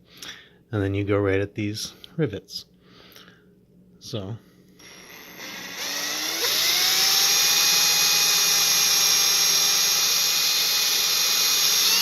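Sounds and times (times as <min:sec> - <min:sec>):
cordless drill whining: 0:04.8 - 0:12.0.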